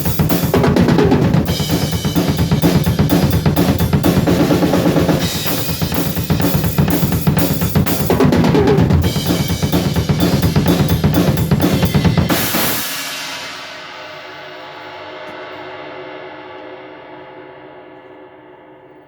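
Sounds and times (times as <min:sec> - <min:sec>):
drum kit playing rapid groove: 0:00.0 - 0:14.9
cymbal crash ringing: 0:12.2 - 0:19.0.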